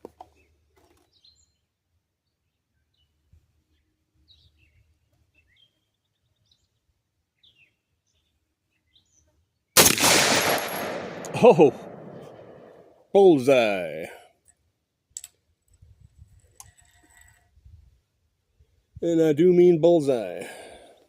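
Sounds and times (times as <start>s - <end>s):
rifle shot echoing: 9.8s - 12.8s.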